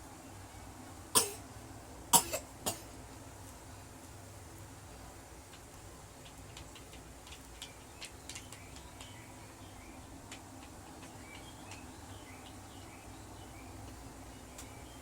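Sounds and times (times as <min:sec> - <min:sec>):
steady low hum: 0:00.0 - 0:15.0
small clicks and ticks: 0:05.4 - 0:12.9.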